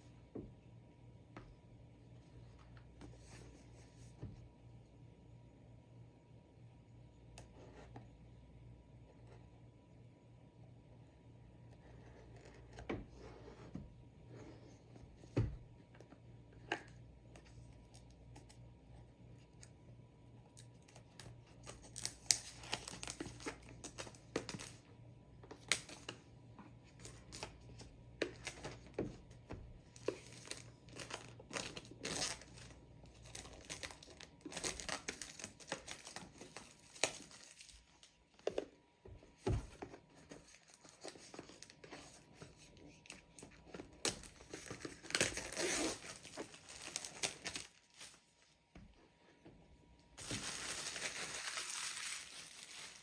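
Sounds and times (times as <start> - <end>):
packaging tearing and rustling: 21.6 - 24.8, 29.9 - 38.2, 43.8 - 48.3, 50.2 - 53.0.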